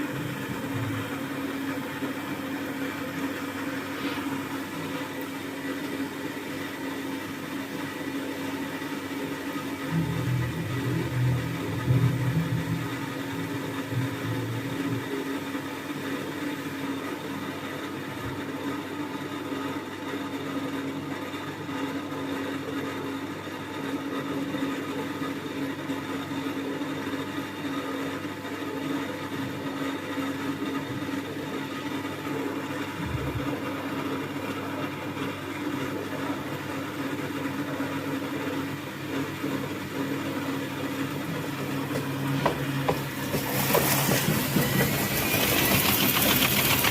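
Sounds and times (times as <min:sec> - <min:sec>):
washing machine motor hum: 0:00.0 - 0:46.9
low rumble: 0:09.9 - 0:15.0.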